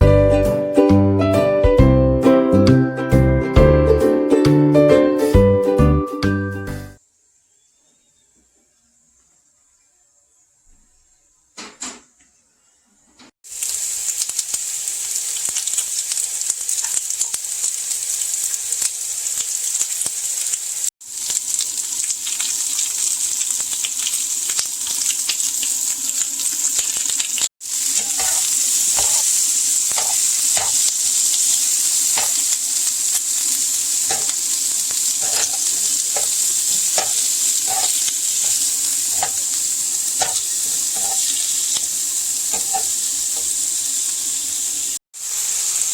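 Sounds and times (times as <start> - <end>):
food sizzling in a frying pan: 13.4 - 45.9
metal utensil scraping a pan: 27.8 - 32.6, 33.4 - 41.8, 42.5 - 43.6.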